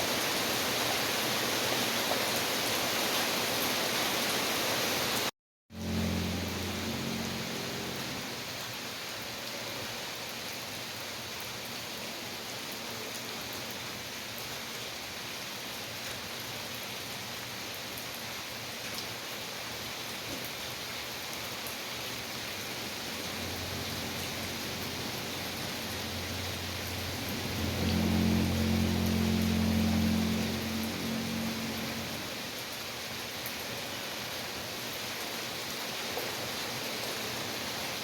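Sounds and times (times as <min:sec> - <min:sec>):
steady rain falling: 0:00.0 - 0:38.0
low rumble: 0:23.0 - 0:32.4.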